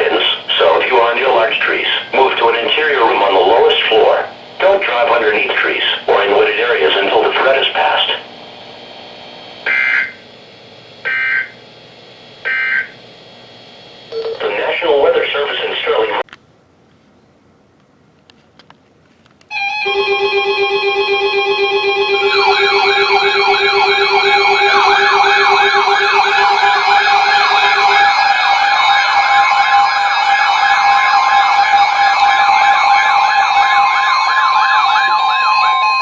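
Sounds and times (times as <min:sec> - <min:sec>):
steady emergency alert tones: 0:00.0 - 0:08.3, 0:09.6 - 0:10.2, 0:11.0 - 0:11.6, 0:12.5 - 0:13.0, 0:19.5 - 0:36.0
warbling siren-like tones: 0:00.0 - 0:08.3, 0:09.6 - 0:10.2, 0:11.1 - 0:11.6, 0:19.5 - 0:36.0
pulsing low tone: 0:19.6 - 0:36.0.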